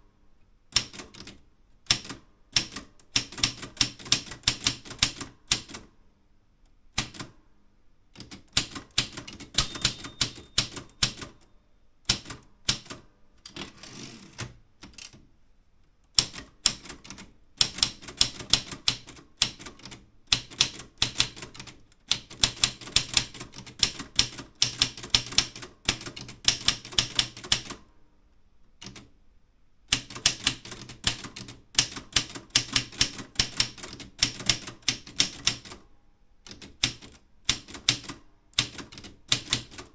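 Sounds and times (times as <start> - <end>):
typewriter keystroke clacks: 0.8 - 5.9, 8.2 - 11.4, 16.1 - 27.8, 29.9 - 35.8, 36.4 - 39.9
typewriter margin bell ring: 9.6 - 11.4.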